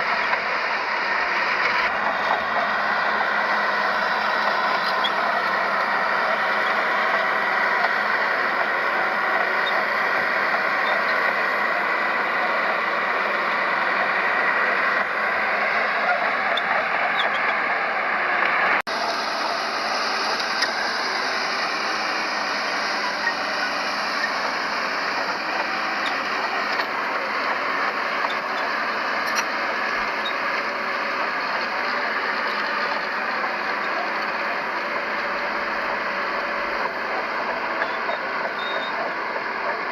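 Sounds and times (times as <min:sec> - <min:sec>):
heavy diesel machinery running: 0:00.0 - 0:39.9.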